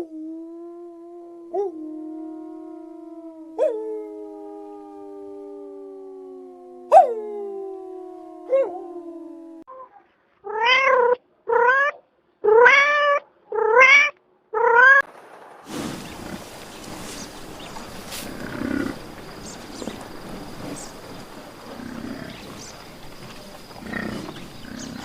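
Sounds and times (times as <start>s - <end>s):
cat meowing: 10.5s - 15.0s
steady background hiss: 15.1s - 25.0s.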